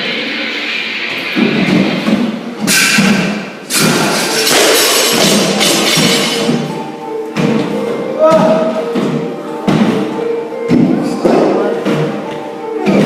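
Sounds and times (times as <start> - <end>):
background music: 0.0 - 13.0
thuds of workout equipment: 8.3 - 10.1.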